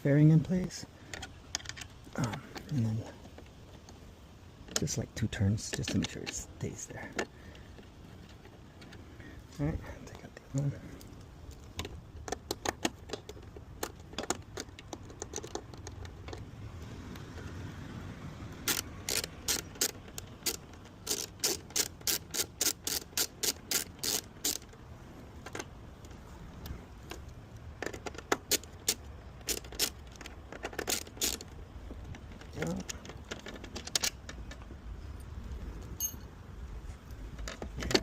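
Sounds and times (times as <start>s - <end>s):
quick sharp metallic clicks: 18.5s - 24.8s.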